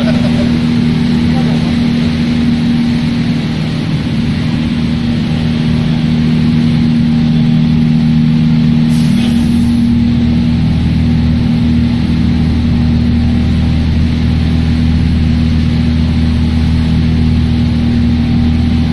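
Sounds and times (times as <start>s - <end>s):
industrial machinery droning: 0.0s - 18.9s
short high hiss: 8.9s - 9.9s.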